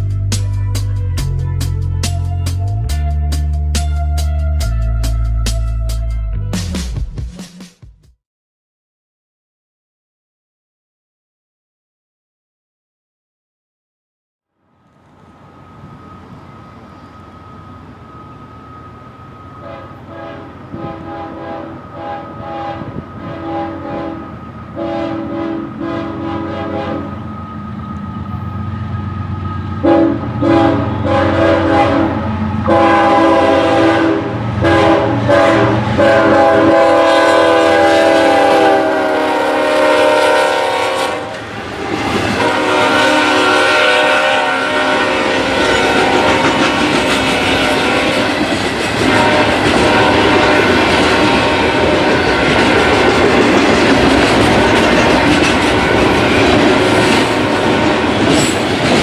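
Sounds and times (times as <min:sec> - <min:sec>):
locomotive air horn blasts: 0:19.5 - 0:27.3, 0:29.8 - 0:53.5
freight cars rumbling and clacking: 0:45.9 - 0:59.0.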